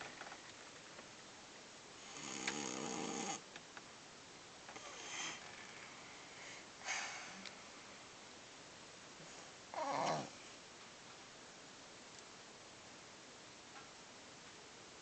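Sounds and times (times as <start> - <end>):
person snoring: 2.0 - 3.4, 4.8 - 5.8.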